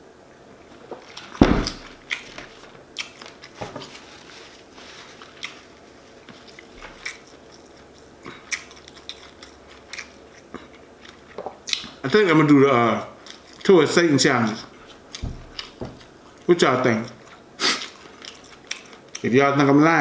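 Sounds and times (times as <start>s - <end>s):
heavy thump: 1.4s - 2.2s, 15.2s - 16.2s
person chewing and crunching food: 6.4s - 11.9s.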